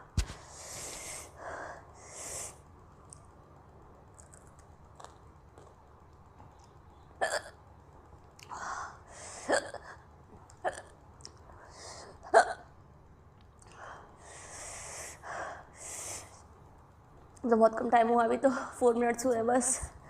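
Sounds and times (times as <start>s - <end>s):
breathy hissing: 0.4s - 2.6s, 13.7s - 16.5s
woman hiccupping: 7.2s - 7.6s, 9.4s - 10.0s, 10.6s - 11.0s.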